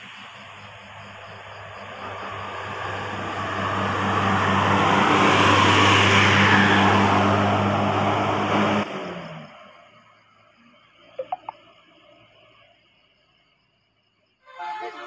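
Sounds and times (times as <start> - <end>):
bus driving past: 0.0 - 9.6.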